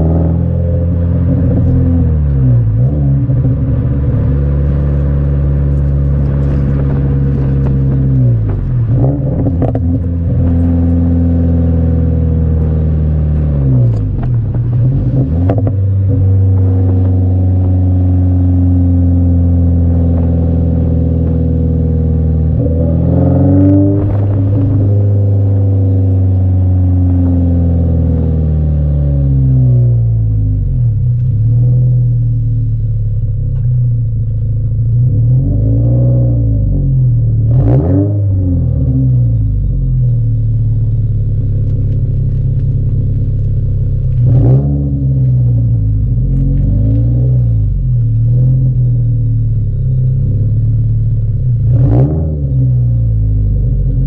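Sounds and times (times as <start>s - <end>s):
car engine accelerating: 0.0s - 54.0s.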